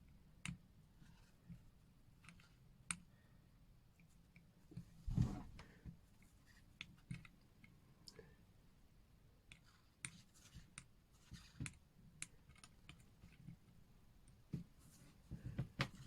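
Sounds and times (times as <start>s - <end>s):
small clicks and taps of tools: 6.8s - 8.2s, 9.4s - 14.7s.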